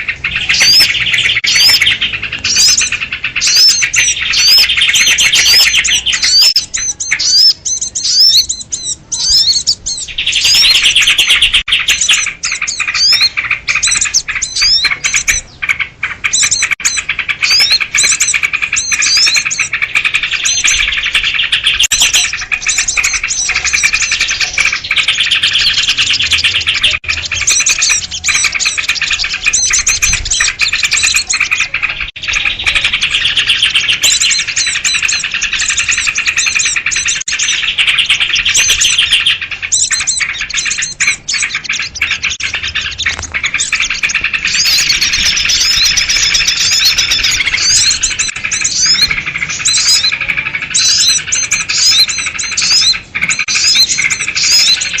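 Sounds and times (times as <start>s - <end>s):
flock of small birds chattering: 0.0s - 55.0s.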